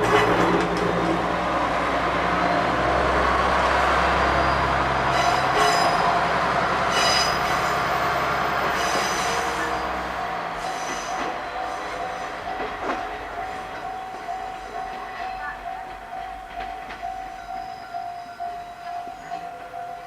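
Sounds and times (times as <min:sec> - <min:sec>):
railcar engine humming: 0:00.0 - 0:20.0
train rolling noise: 0:00.0 - 0:20.0
wheels squealing: 0:03.7 - 0:06.3, 0:06.9 - 0:13.0.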